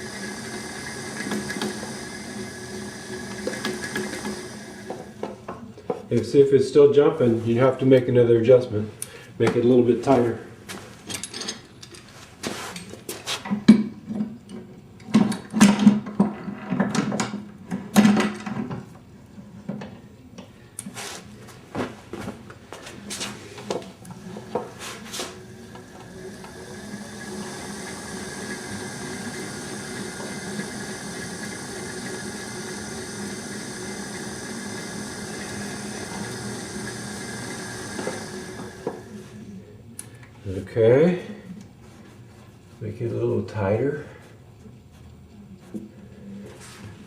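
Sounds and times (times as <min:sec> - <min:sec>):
electric motor humming: 0:00.0 - 0:05.2, 0:24.0 - 0:39.5.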